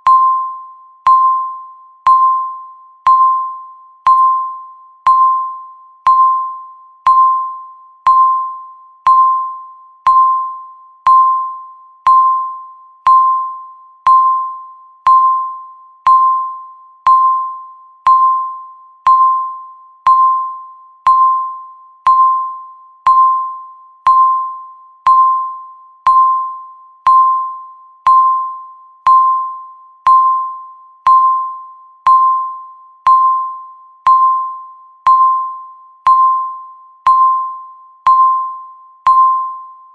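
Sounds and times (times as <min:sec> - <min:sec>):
timer beep: 0:00.0 - 0:39.9.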